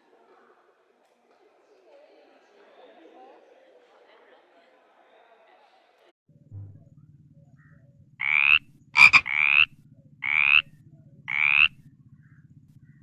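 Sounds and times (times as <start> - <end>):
animal buzzy calls: 8.2 - 10.7, 11.3 - 11.8.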